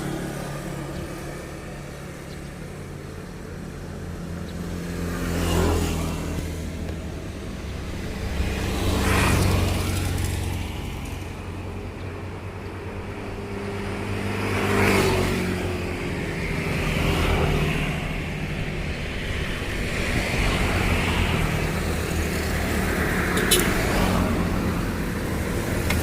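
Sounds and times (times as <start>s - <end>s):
motorcycle engine idling and revving: 0.0s - 26.0s.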